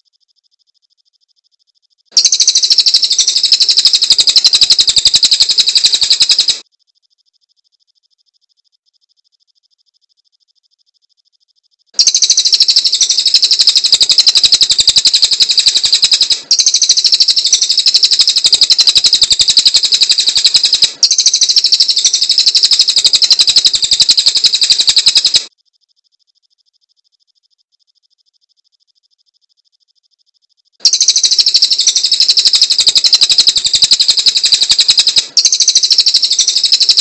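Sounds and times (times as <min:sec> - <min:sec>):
songbird chattering trill: 0:02.2 - 0:06.6, 0:12.0 - 0:25.5, 0:30.9 - 0:37.0.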